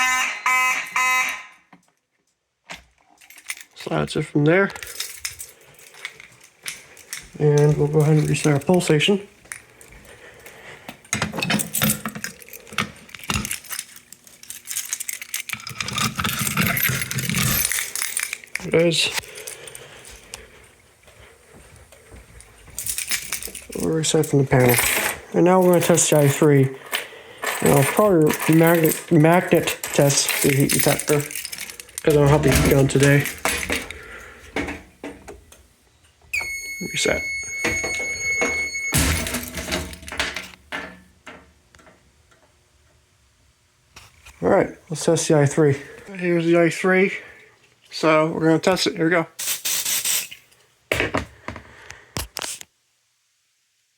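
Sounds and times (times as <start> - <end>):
steady alarm tone: 0.0 - 1.7, 36.3 - 40.2
key ring jingling: 3.2 - 3.8, 4.7 - 10.0, 11.5 - 19.6, 22.7 - 26.6, 27.4 - 33.9, 36.4 - 40.2
small metal clicks: 11.1 - 19.6.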